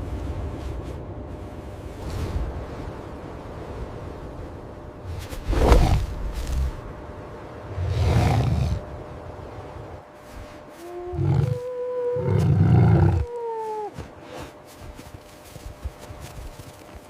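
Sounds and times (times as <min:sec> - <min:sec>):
wolf howling: 0:10.8 - 0:14.0.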